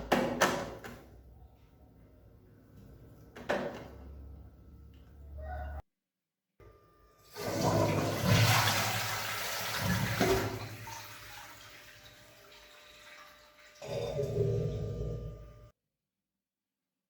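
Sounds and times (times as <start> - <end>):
toilet flushing: 7.2 - 14.8
water trickling: 7.4 - 13.8.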